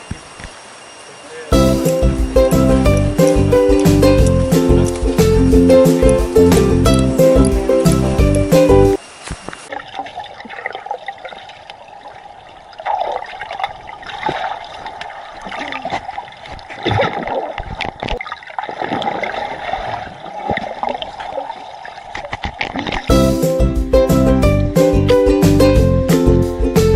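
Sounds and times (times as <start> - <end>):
waterfall running: 0.0 - 16.8.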